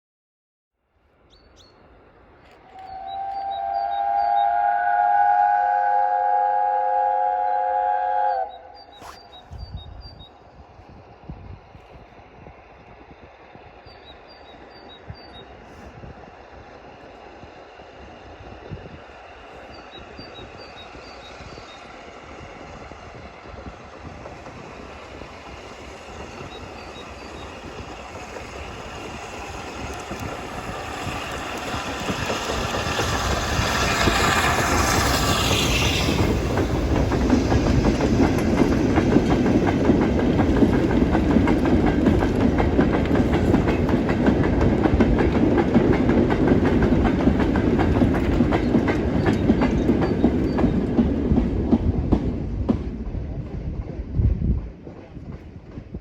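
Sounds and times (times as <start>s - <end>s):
steam locomotive rumble: 2.0s - 56.0s
wagons clickety-clack: 25.5s - 52.9s.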